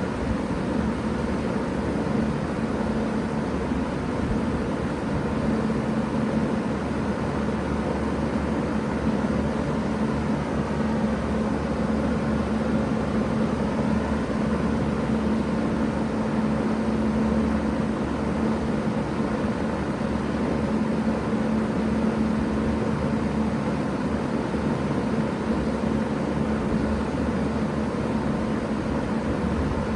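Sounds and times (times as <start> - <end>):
heat pump hum: 0.0 - 29.9.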